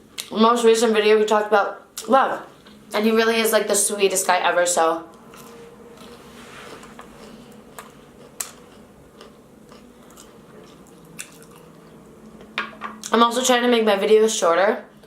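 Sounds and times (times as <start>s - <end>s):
faint steady hum: 0.0s - 15.0s
chewing and crunching food: 5.3s - 13.2s.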